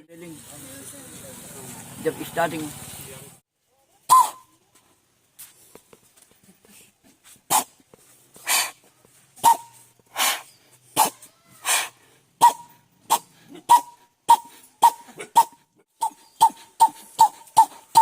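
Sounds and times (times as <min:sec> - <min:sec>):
man imitating engine starting: 0:11.0 - 0:12.0.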